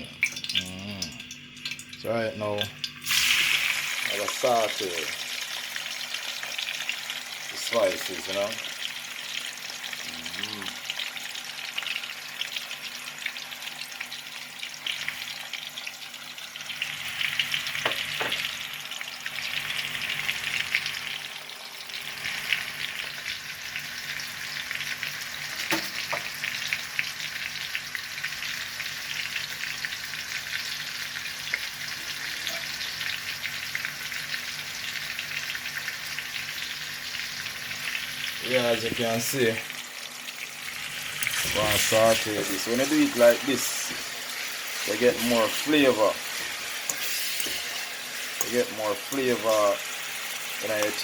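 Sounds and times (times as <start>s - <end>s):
vegetables sizzling in hot oil: 0.0s - 51.0s.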